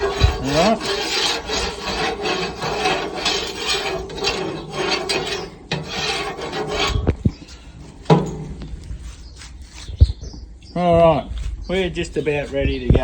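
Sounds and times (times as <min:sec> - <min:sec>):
utensil scraping barbecue hotplate: 0:00.0 - 0:10.0.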